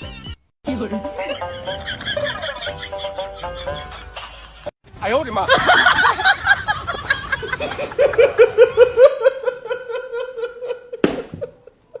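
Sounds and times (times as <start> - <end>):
person laughing: 0.0 - 4.7.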